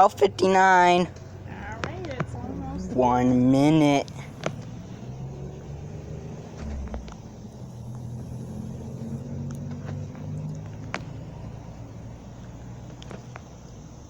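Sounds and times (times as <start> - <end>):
engine running at low revs: 0.0 - 14.0
faint clicks: 4.0 - 13.7.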